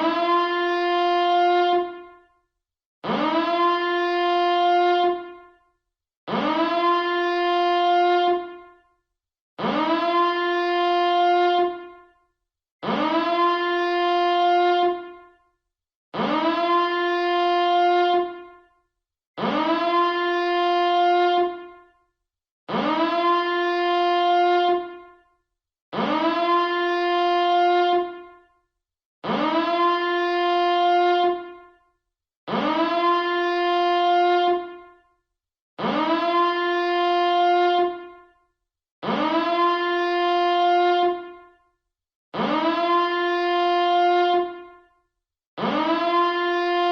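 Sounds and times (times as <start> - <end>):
siren blasts: 3.0 - 5.5, 6.3 - 8.8, 9.6 - 12.0, 12.8 - 15.3, 16.2 - 18.7, 19.4 - 21.9, 22.7 - 25.2, 25.9 - 28.4, 29.2 - 31.7, 32.5 - 35.0, 35.8 - 38.2, 39.0 - 41.5, 42.4 - 44.9, 45.6 - 46.9.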